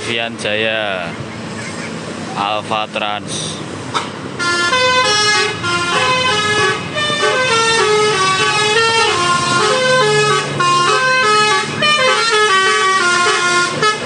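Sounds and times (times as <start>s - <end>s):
multi-tone bus horn melody: 3.9s - 14.0s.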